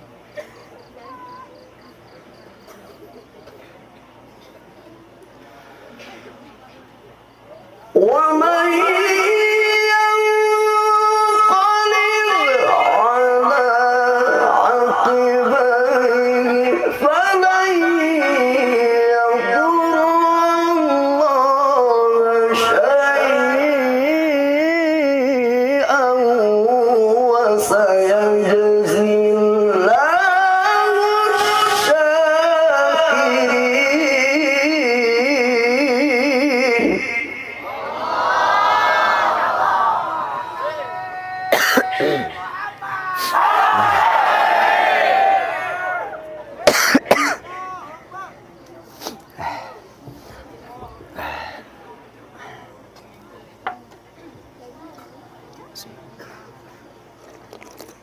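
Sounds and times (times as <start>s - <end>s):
man coughing: 0.3s - 0.8s, 41.5s - 42.4s, 46.7s - 47.5s
man reciting melodically: 7.8s - 37.8s.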